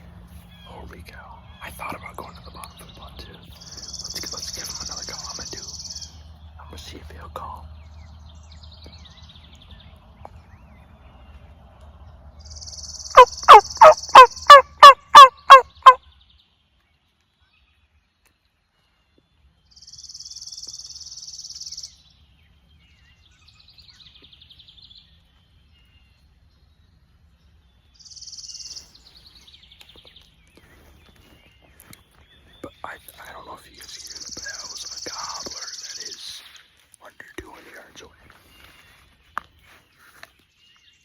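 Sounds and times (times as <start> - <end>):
turkey call yelps: 13.1 - 16.0.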